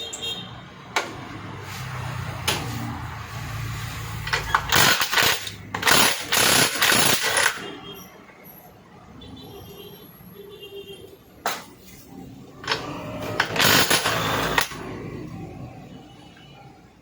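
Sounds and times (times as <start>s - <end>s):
metal parts clinking and knocking: 4.2s - 7.6s, 12.6s - 14.8s.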